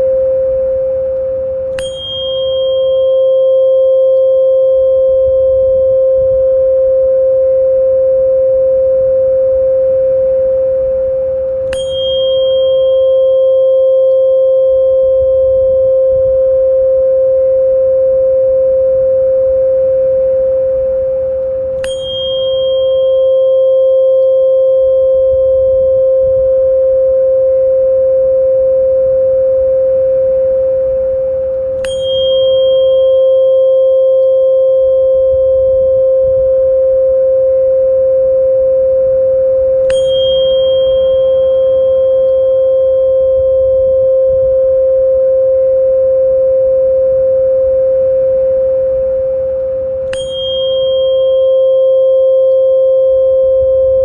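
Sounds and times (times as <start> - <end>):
ringing sound therapy tone: 0.0 - 54.0
bright ping of strike: 1.7 - 4.3, 11.6 - 14.3, 21.8 - 24.4, 31.8 - 34.4, 39.8 - 42.8, 50.0 - 52.6.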